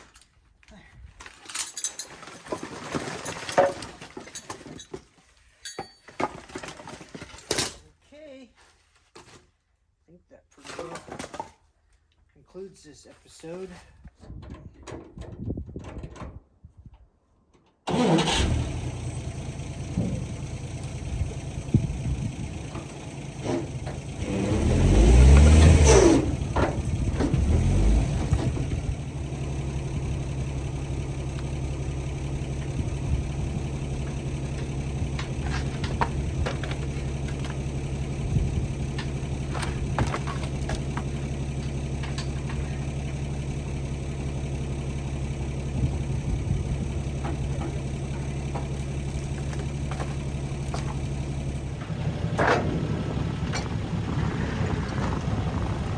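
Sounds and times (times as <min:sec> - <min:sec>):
engine idling: 0:17.9 - 0:55.9
engine starting and revving: 0:17.9 - 0:55.9.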